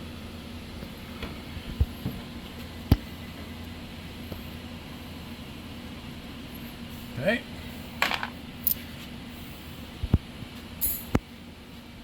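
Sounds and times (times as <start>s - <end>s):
steady low hum: 0.0s - 12.0s
metal tools knocking and clicking: 10.8s - 11.2s.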